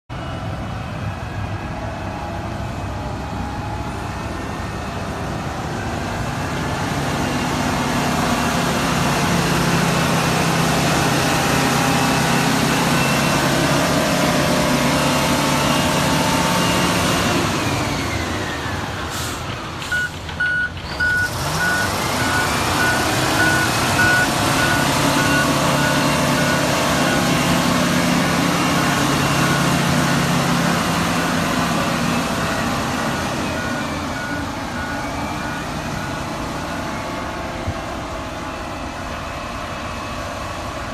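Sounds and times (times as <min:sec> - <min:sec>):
bulldozer diesel engine under load: 0:00.1 - 0:40.9
reversing alarm beeping: 0:10.9 - 0:18.4, 0:19.9 - 0:39.5.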